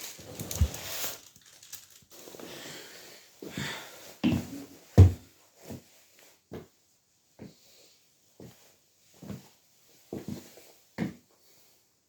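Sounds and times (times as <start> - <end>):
fabric rustling: 0.0 - 2.6.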